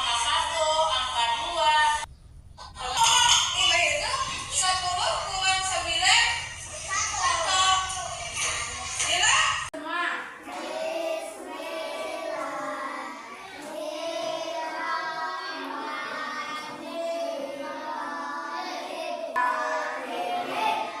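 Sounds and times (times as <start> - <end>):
children singing: 10.4 - 21.0.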